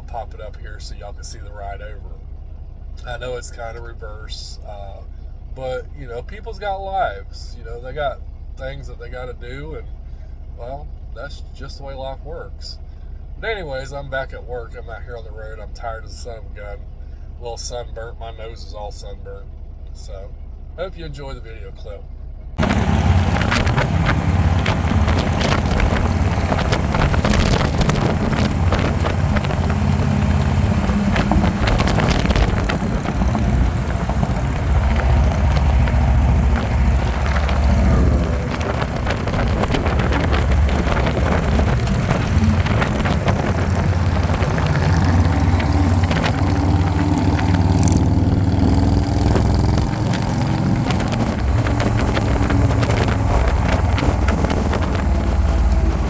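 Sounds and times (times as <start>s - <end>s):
motorcycle engine rumble: 0.0s - 56.0s
wind rushing over microphone: 22.6s - 56.0s.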